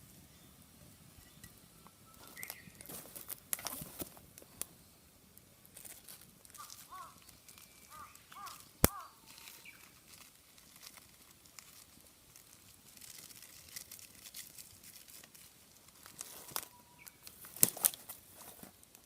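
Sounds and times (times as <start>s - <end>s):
wood fire crackling: 0.0s - 19.0s
bird chirps: 1.2s - 3.0s, 6.6s - 10.0s, 16.6s - 17.3s.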